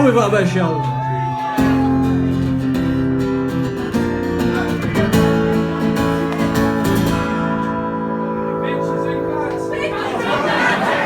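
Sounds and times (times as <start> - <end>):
guitar chords strummed: 1.9 - 11.0
live band playing: 2.9 - 10.5.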